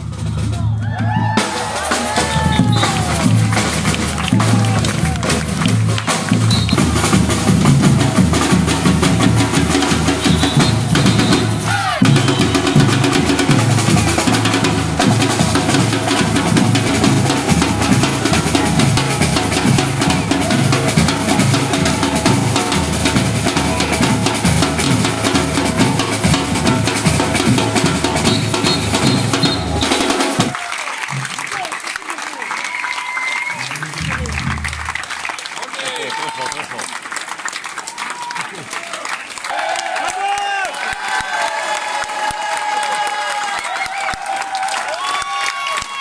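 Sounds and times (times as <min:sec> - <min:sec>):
drum kit beat: 0:00.0 - 0:30.5.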